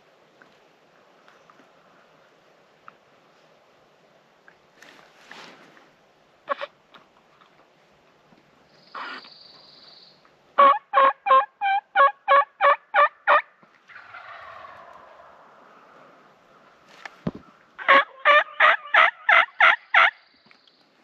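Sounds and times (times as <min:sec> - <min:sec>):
turkey yelps: 0:10.6 - 0:15.7, 0:17.8 - 0:20.1
falling drawn-out turkey call: 0:10.6 - 0:16.2, 0:17.8 - 0:20.1.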